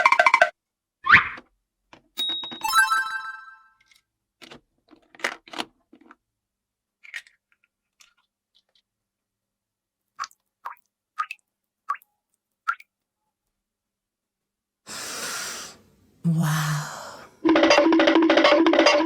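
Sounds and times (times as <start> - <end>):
ringing chime tone: 2.2 - 3.7.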